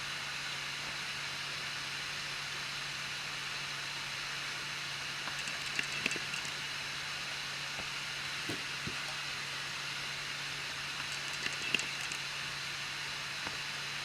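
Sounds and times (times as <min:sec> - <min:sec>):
printer fan hiss and hum: 0:00.0 - 0:14.0
extruder sharp clicks: 0:05.2 - 0:06.6, 0:11.0 - 0:12.3.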